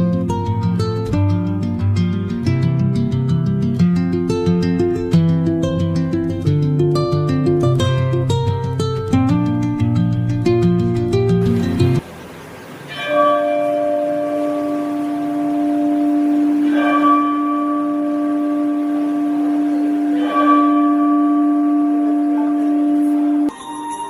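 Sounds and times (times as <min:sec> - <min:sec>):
electronic church bell tolling: 0:12.9 - 0:24.0.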